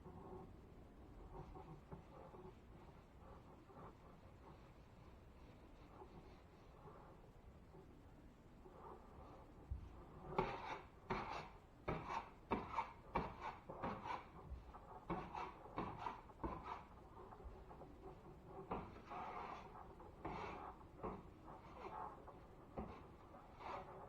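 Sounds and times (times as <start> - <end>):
hand tool scraping drywall: 10.4 - 24.0.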